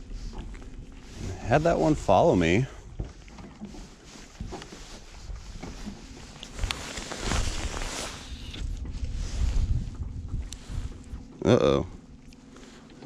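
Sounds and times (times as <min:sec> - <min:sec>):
wind buffeting microphone: 0:04.3 - 0:11.4.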